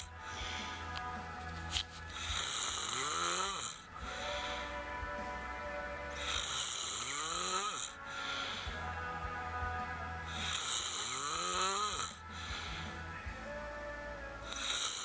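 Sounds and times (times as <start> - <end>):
person snoring: 0.0 - 5.0, 6.1 - 9.0, 10.2 - 13.0, 14.4 - 15.0.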